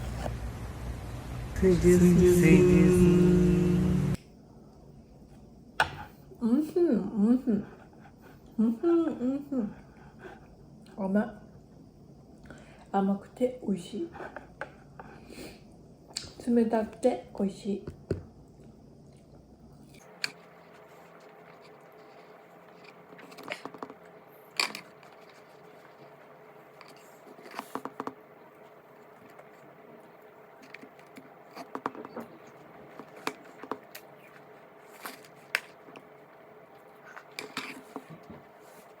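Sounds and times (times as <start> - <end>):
faint steady hum: 0.0 - 39.0
crunchy chewing of watermelon: 18.6 - 39.0.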